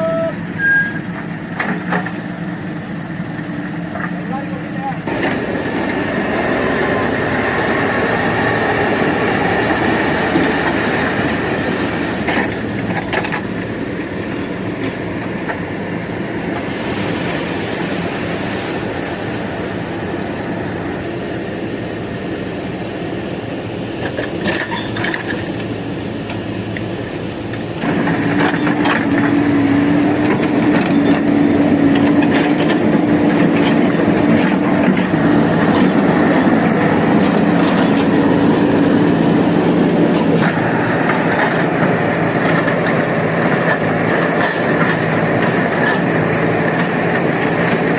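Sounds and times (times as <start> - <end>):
diesel engine under load: 0.0 - 47.9
metal clanks: 24.2 - 26.4, 30.2 - 36.5.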